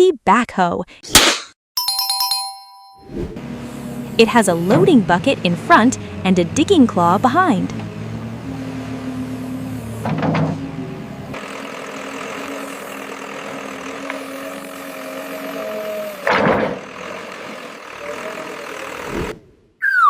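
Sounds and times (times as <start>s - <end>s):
backhoe engine running: 3.5s - 19.3s.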